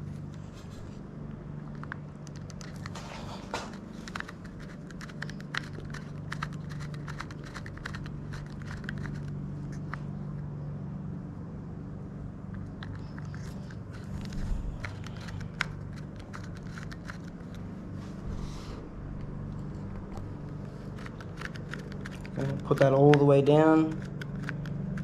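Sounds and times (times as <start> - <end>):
low hum: 0.0 - 25.0
cable housing clicks and crinkling: 1.6 - 10.4, 12.5 - 17.7, 19.2 - 25.0.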